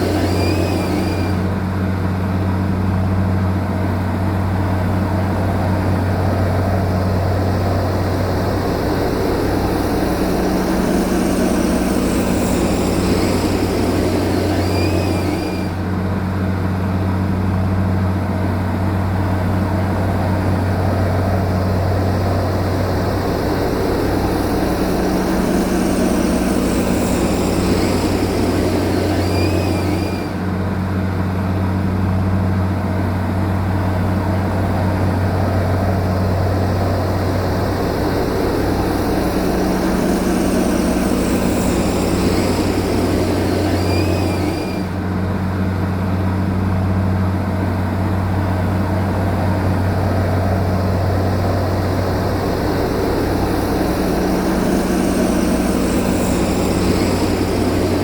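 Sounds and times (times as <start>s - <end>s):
heavy diesel engine droning: 0.0s - 58.0s.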